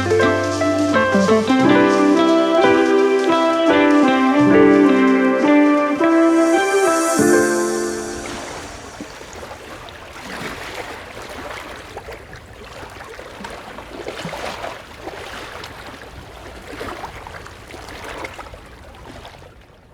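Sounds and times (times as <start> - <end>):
water sloshing and splashing: 8.2 - 19.9
small crackling splashes: 8.6 - 19.9.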